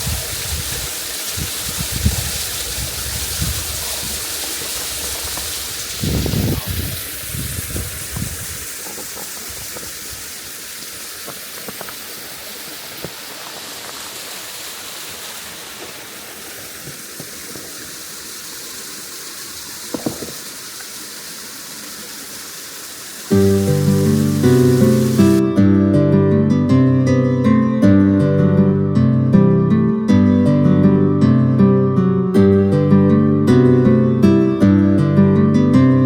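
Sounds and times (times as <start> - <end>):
waterfall rushing: 0.0 - 25.6
acoustic guitar music: 23.3 - 36.0.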